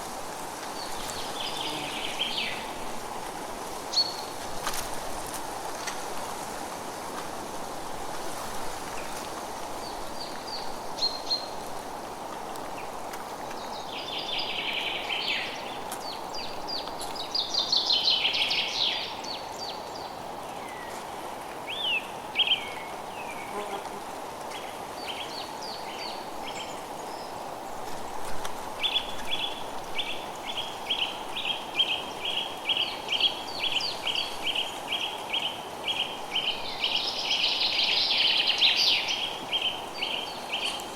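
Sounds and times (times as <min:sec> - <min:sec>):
background hiss: 0:00.0 - 0:40.9.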